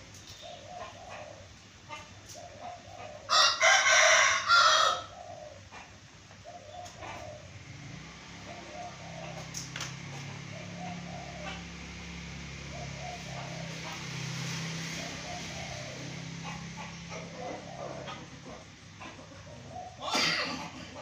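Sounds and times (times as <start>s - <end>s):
chicken clucking: 0.1s - 7.7s, 8.4s - 12.1s, 12.7s - 14.2s, 15.0s - 21.0s
rooster crowing: 3.3s - 5.2s.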